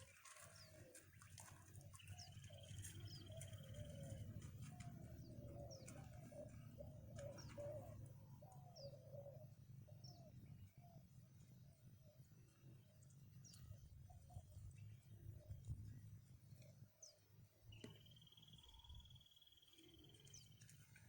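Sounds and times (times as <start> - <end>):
faint dove cooing: 0.0 - 11.1.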